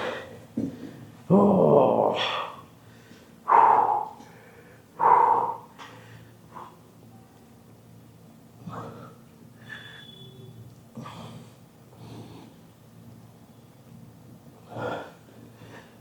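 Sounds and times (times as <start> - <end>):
man breathing: 2.2 - 6.9, 8.8 - 10.2.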